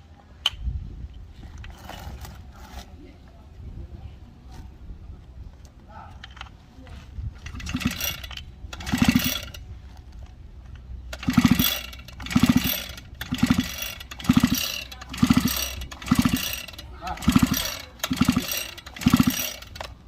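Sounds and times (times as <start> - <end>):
small engine being pull-started: 1.6 - 2.8, 7.4 - 9.6, 11.1 - 20.0.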